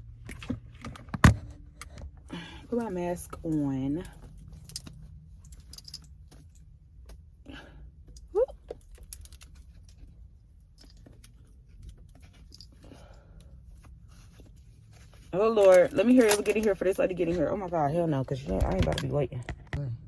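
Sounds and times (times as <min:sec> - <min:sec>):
small clicks and rustles: 0:02.8 - 0:07.4, 0:08.0 - 0:17.5.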